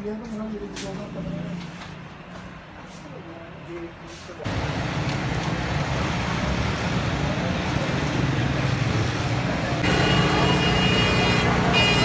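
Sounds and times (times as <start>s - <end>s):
road traffic engines: 0.3s - 12.0s
vehicle horn held tone: 9.8s - 12.0s.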